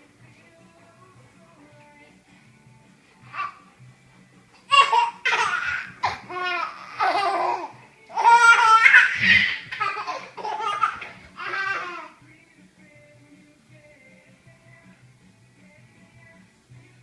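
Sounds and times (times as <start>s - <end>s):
young child laughing: 4.7s - 12.1s.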